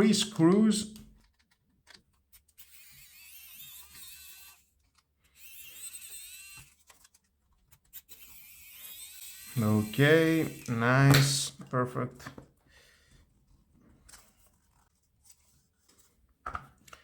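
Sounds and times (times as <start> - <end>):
electric screwdriver whine: 2.6 - 4.7, 5.3 - 6.8, 7.9 - 10.8.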